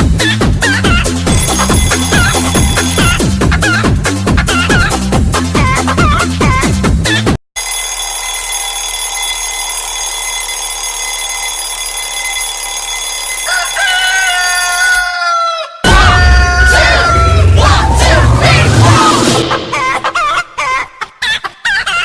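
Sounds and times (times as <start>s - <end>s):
rooster crowing: 13.3s - 18.2s.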